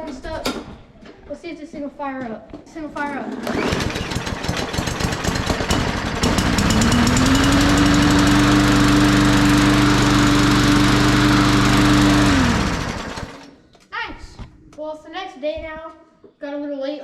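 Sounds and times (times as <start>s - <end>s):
lawn mower engine starting: 3.2s - 13.6s.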